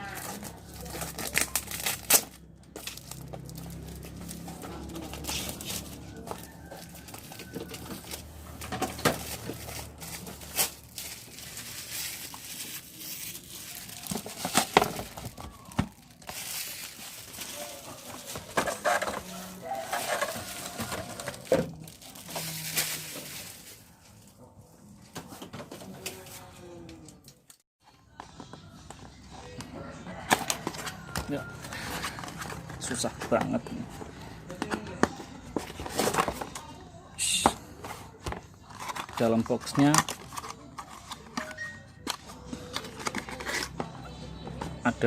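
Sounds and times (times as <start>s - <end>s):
crinkling plastic: 0.0s - 24.3s
rustling cardboard: 2.8s - 23.9s, 35.5s - 36.7s.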